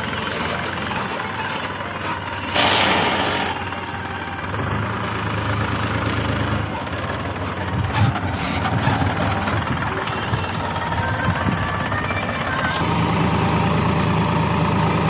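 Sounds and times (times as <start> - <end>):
heavy diesel engine running: 0.0 - 15.0
sharp knocks: 2.6 - 3.9.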